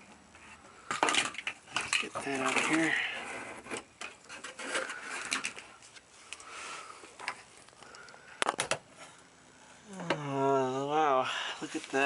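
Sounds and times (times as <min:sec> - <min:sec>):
cover scraping and rattling: 0:00.9 - 0:05.6.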